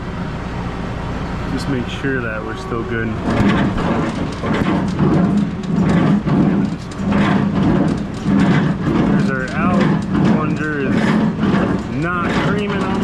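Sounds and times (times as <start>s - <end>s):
tractor engine drone: 0.0s - 13.0s
baler clattering: 1.5s - 13.0s.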